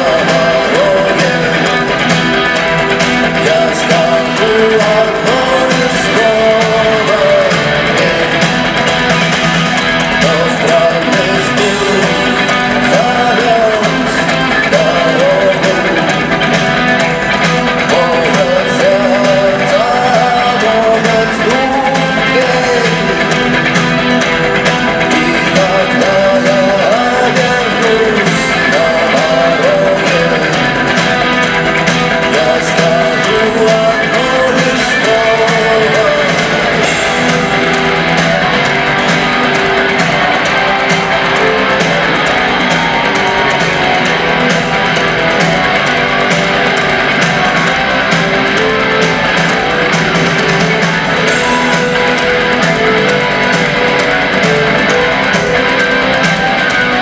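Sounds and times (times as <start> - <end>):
electric guitar: 0.0 - 57.0
live rock band playing: 0.0 - 57.0
person singing: 0.0 - 57.0.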